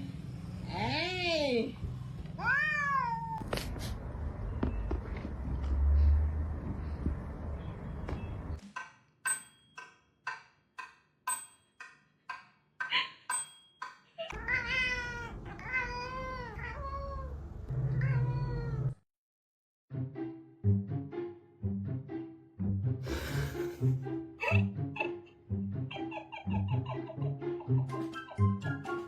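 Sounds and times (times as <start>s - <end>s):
cat meowing: 2.4s - 3.4s, 14.3s - 19.0s.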